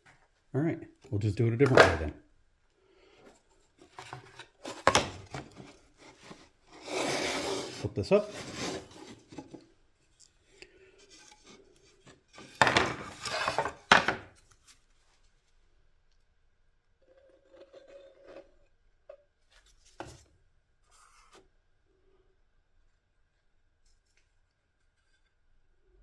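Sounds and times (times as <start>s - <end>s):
parts scraping on workbench: 1.6s - 2.1s, 4.0s - 9.6s, 12.4s - 14.2s.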